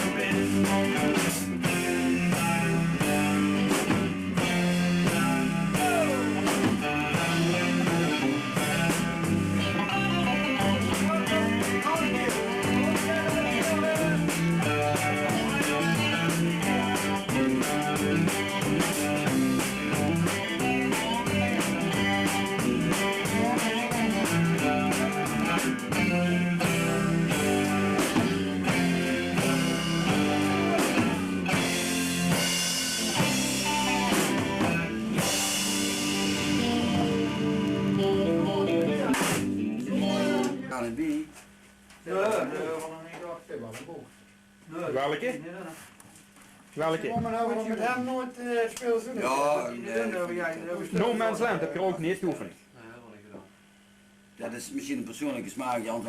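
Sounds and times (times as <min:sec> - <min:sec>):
bass line: 0:00.0 - 0:41.0
rock band playing: 0:00.0 - 0:41.0
drums steady beat: 0:00.0 - 0:41.9
guitar: 0:00.0 - 0:45.5, 0:46.2 - 0:53.6.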